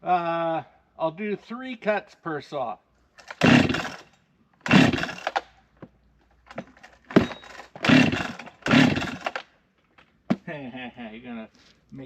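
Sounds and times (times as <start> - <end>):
starter cord pulled with rattling whirr: 3.2 - 5.5, 6.5 - 9.5.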